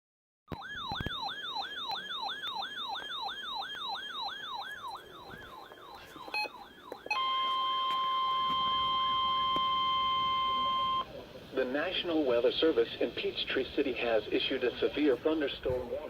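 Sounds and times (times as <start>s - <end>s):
electronic siren yelping: 0.5s - 11.1s
weather radio alarm tone: 0.5s - 11.1s.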